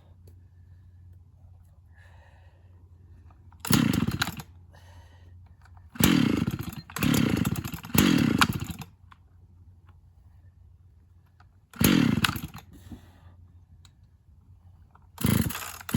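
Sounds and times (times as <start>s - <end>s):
chainsaw engine revving: 3.6s - 4.5s, 5.9s - 8.9s, 11.8s - 12.7s, 15.2s - 15.9s.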